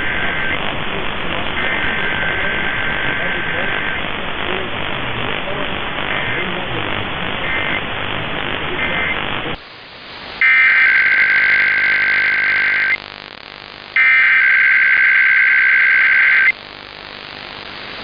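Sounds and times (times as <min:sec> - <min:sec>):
screeching two-tone data signal: 0:00.0 - 0:00.6, 0:01.6 - 0:04.0, 0:10.4 - 0:13.0, 0:13.9 - 0:16.6
short data chirp: 0:10.4 - 0:13.0, 0:14.0 - 0:16.6.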